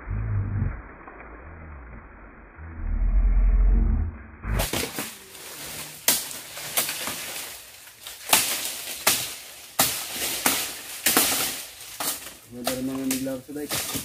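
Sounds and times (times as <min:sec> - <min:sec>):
blade chopping palm fronds: 0:04.6 - 0:14.0.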